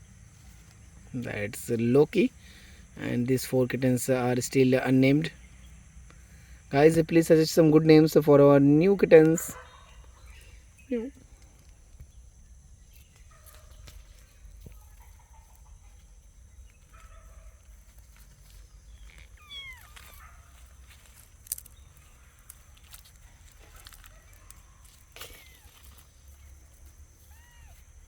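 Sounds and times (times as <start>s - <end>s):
kittens mewing: 19.1s - 20.5s, 25.1s - 26.0s, 27.2s - 27.8s.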